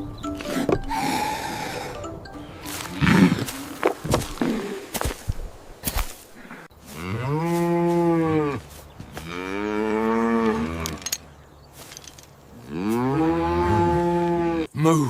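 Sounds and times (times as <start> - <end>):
cow mooing: 0.4 - 3.8, 9.2 - 11.1, 12.6 - 14.7.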